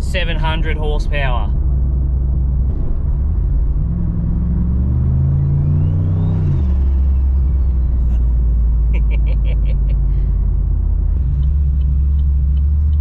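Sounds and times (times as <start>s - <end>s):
car engine revving: 0.0s - 13.0s
faint high turbo whistle: 4.6s - 8.1s.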